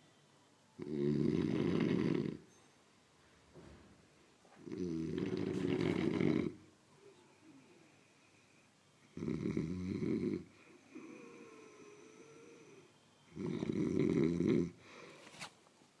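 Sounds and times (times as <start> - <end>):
loud rattling snores: 0.8 - 2.4, 4.7 - 6.6, 9.2 - 14.8.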